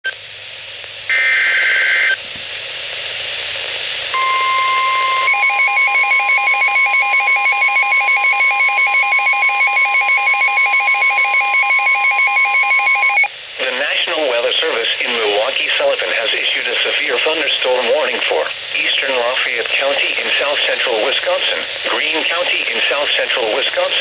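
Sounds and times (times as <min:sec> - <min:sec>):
static hiss: 0:00.1 - 0:05.3, 0:13.3 - 0:24.0
steady warning alarm tone: 0:04.2 - 0:13.3.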